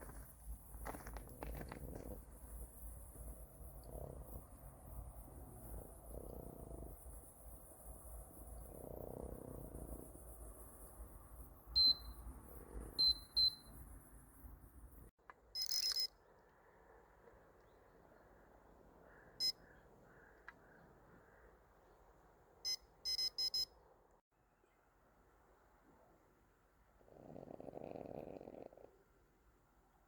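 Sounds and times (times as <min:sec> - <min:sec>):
electronic bite alarm beeping: 0:11.8 - 0:12.2, 0:13.0 - 0:13.7, 0:15.6 - 0:16.1, 0:22.7 - 0:23.7.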